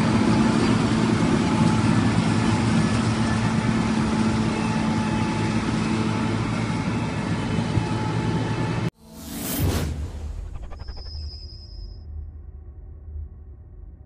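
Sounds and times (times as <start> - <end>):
combine harvester running: 0.0 - 9.5.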